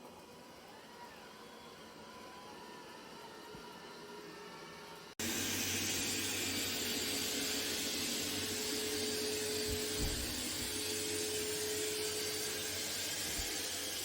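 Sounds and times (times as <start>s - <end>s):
robot vacuum whirring: 0.2s - 14.0s
low bump: 9.7s - 10.8s.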